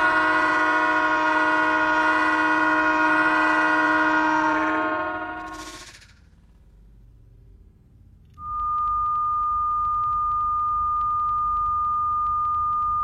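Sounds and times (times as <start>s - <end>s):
faint ticks: 8.2s - 13.0s
high-pitched electronic beep tone: 8.4s - 13.0s.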